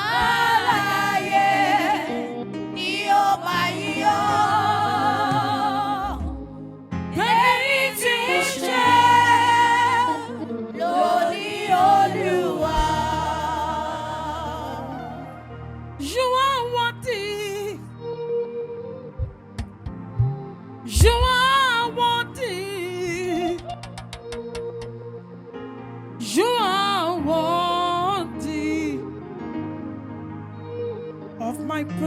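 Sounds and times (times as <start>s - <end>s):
gospel singing: 0.0s - 17.1s
low musical accompaniment: 0.0s - 32.0s.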